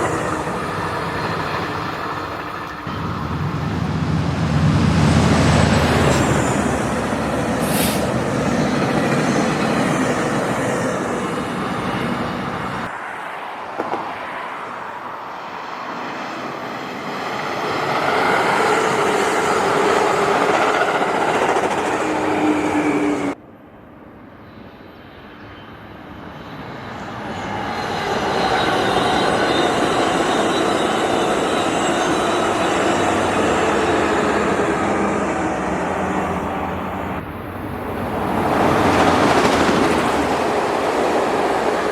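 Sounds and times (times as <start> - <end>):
locomotive engines: 0.0 - 12.9, 26.6 - 41.9
train wheels rumbling on rails: 0.0 - 12.9, 16.6 - 23.4, 26.6 - 41.9.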